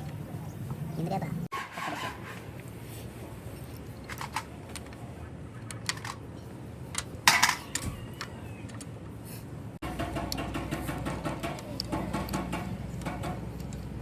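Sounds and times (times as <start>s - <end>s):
metal parts clicking and knocking: 3.6s - 5.0s, 5.6s - 9.0s, 9.8s - 14.0s.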